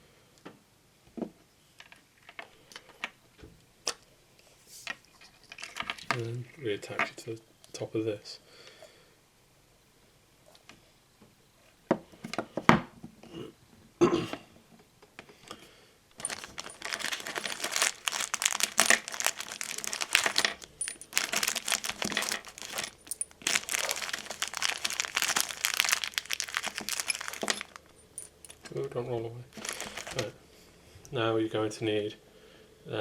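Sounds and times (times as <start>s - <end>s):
plastic packaging crinkling: 16.2s - 28.7s, 29.5s - 30.4s
small parts knocking: 16.2s - 28.8s, 29.6s - 30.3s.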